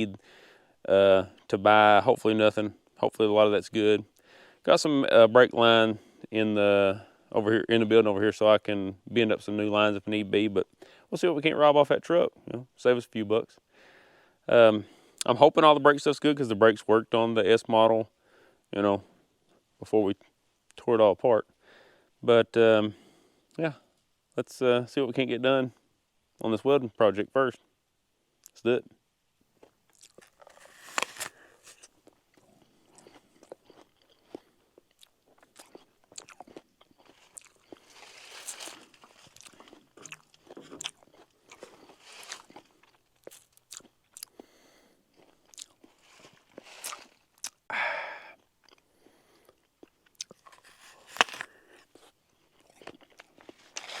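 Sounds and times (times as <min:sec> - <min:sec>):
person chewing crisp apple: 0:29.6 - 0:47.7, 0:48.4 - 0:54.0.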